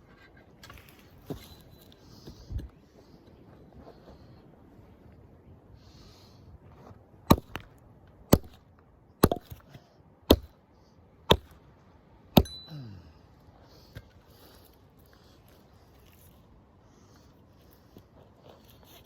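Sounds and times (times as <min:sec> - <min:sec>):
hand tool chopping into ground: 0:07.3 - 0:07.6, 0:08.3 - 0:08.6, 0:09.2 - 0:09.7, 0:10.3 - 0:10.5, 0:11.3 - 0:11.6.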